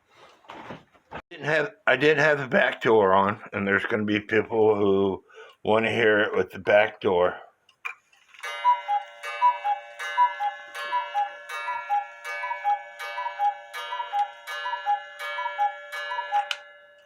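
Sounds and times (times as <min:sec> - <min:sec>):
clock mechanism clicks: 0:08.4 - 0:16.7
cuckoo clock calling: 0:08.4 - 0:17.0.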